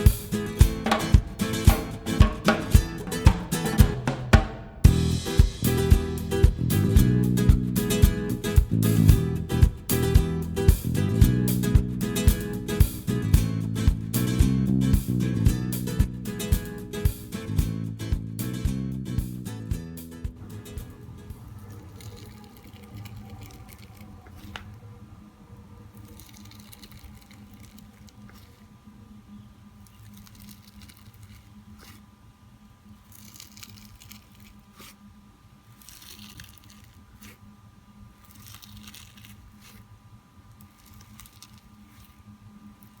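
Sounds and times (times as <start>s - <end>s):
faint steady hum: 0.0s - 43.0s
squishy crackly slime: 25.9s - 28.7s, 29.8s - 32.1s, 32.9s - 35.0s, 35.6s - 37.4s, 38.1s - 39.9s, 40.5s - 43.0s.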